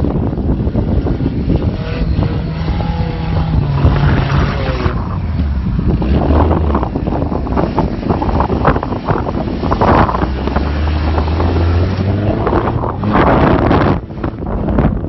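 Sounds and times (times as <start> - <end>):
off-road vehicle engine: 0.0 - 15.0
wind buffeting microphone: 0.0 - 15.0.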